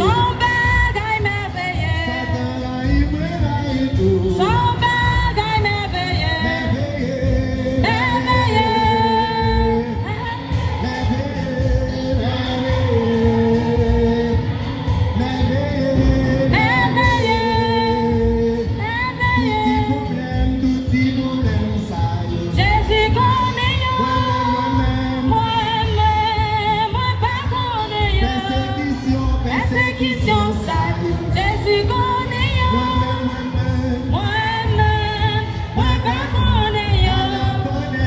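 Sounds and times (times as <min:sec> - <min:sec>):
woman singing a hymn: 0:00.0 - 0:03.0, 0:04.2 - 0:11.1, 0:16.3 - 0:20.2, 0:22.5 - 0:38.0
instrumental accompaniment with beat: 0:00.0 - 0:38.0.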